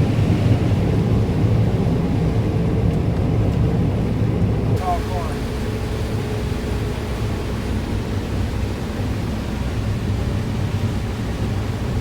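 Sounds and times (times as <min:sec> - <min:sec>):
farm machinery engine rumble: 0:04.8 - 0:12.0.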